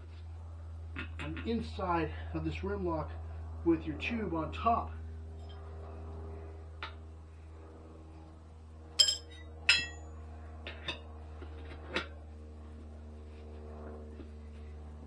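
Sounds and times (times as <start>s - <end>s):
steady low hum: 0.0s - 15.0s
tire levers clinking on rim: 9.0s - 10.0s.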